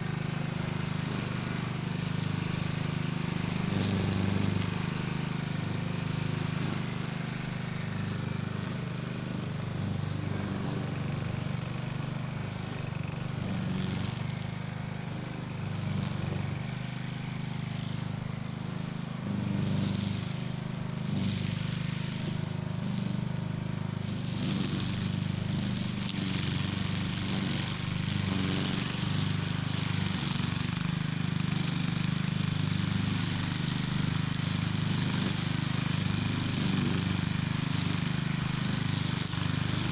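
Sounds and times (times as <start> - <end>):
string trimmer engine running: 0.0 - 39.9
cutting line swishing through weeds: 0.2 - 14.4.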